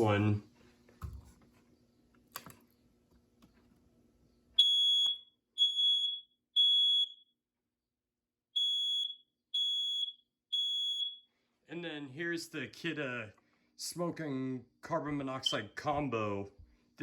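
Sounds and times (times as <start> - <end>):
smoke alarm beeping: 4.6 - 7.4, 8.5 - 11.3.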